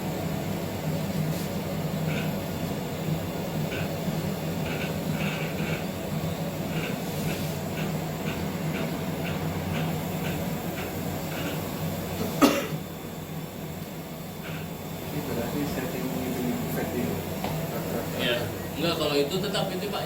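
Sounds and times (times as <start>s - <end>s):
low mechanical hum: 0.0s - 20.0s
person coughing: 12.2s - 12.8s.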